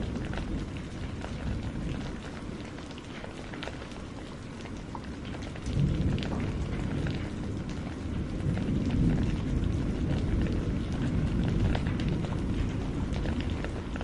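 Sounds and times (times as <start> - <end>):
water drips and splashes: 0.0 - 14.0.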